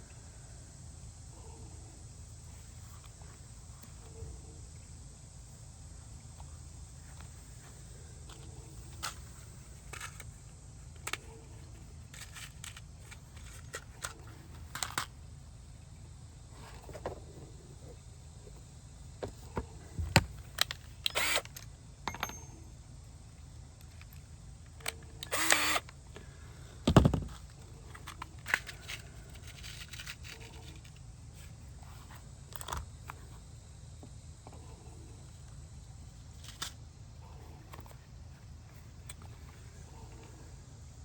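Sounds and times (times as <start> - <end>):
dull thump: 26.8 - 27.4.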